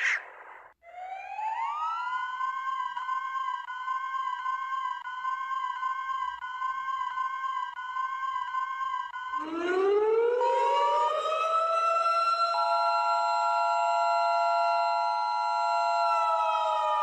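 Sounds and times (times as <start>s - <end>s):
siren wailing: 0.9s - 3.0s, 9.2s - 11.8s.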